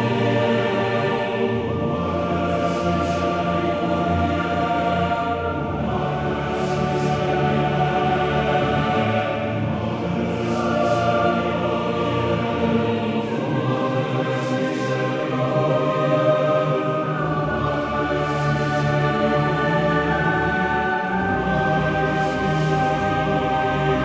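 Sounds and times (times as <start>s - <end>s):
choir singing held chords: 0.0s - 24.0s
musical backing: 15.0s - 24.0s.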